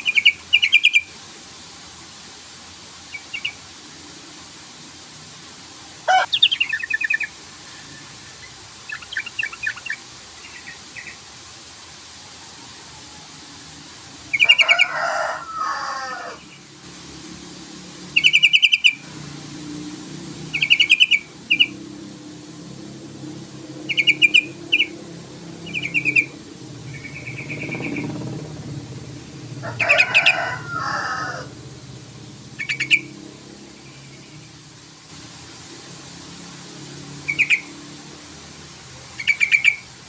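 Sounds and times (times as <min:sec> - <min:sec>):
bird low warbling phrases: 0:06.1 - 0:07.4, 0:25.6 - 0:31.5
bird rapid chattering call: 0:06.1 - 0:07.4, 0:18.2 - 0:19.0, 0:20.5 - 0:21.7, 0:23.9 - 0:25.0, 0:25.6 - 0:28.3, 0:32.6 - 0:33.1, 0:37.3 - 0:37.7, 0:39.2 - 0:39.9.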